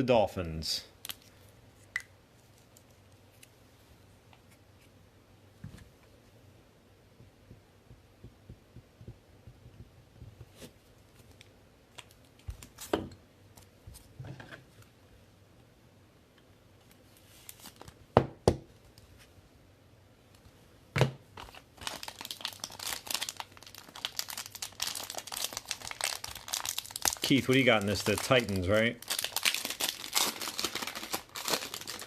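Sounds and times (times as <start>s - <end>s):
plastic wrapper crinkling and tearing: 11.2s - 12.9s, 17.4s - 18.0s, 21.4s - 32.0s.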